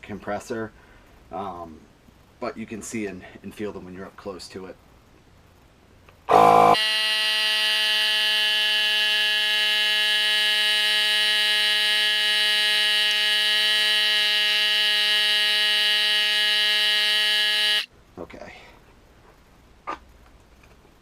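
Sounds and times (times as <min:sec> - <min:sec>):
compressor buzzing hum: 0:06.3 - 0:17.9.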